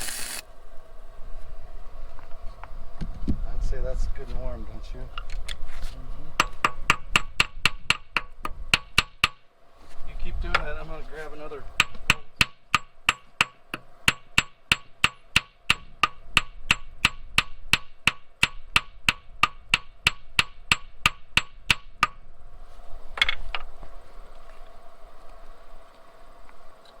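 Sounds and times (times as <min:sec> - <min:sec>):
hammer tapping on metal: 0:06.4 - 0:09.4, 0:11.8 - 0:22.2.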